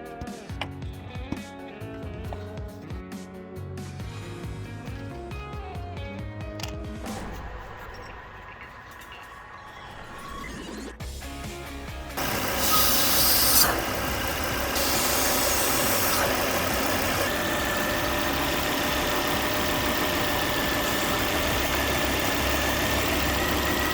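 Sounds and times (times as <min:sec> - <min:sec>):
high hiss: 0:12.2 - 0:17.0
car engine idling: 0:12.2 - 0:23.9.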